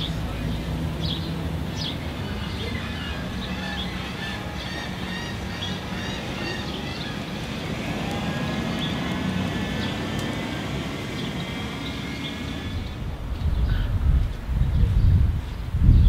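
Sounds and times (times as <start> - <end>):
low engine hum: 0.0 - 16.0.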